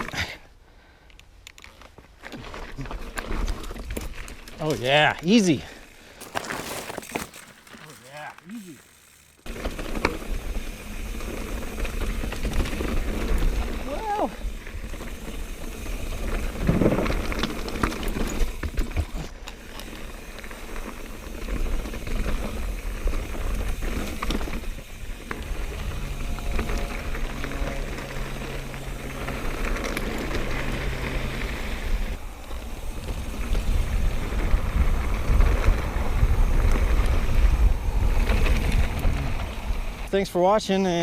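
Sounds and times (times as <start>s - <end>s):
bike rattling and clicking: 1.5s - 5.2s, 6.0s - 40.1s
tyres crunching over dirt: 6.0s - 10.0s
wind rumble on microphone: 31.8s - 40.1s.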